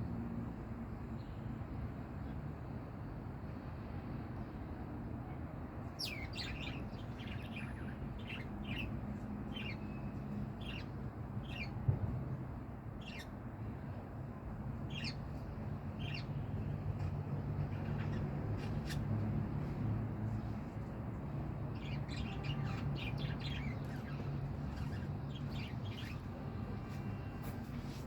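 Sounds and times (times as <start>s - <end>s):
lovebirds chirping and squawking: 6.0s - 11.8s, 13.0s - 13.4s, 14.9s - 16.4s, 17.0s - 19.6s, 21.7s - 27.0s.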